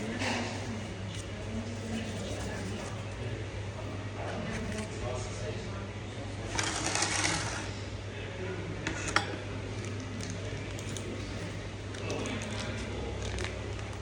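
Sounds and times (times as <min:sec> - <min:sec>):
steady low hum: 0:00.0 - 0:06.8.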